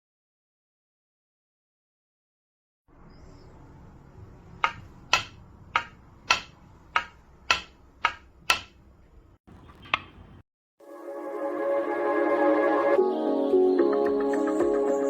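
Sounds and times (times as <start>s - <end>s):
sharp clicks: 4.6s - 8.8s.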